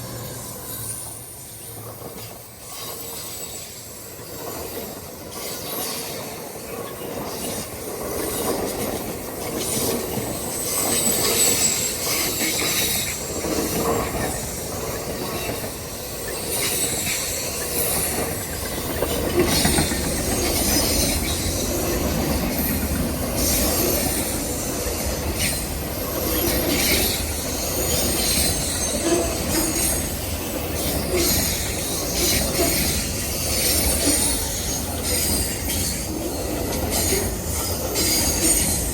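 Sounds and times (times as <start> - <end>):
train wheels rumbling on rail: 0.0 - 38.9
wheels clacking over rail joints: 4.3 - 38.9.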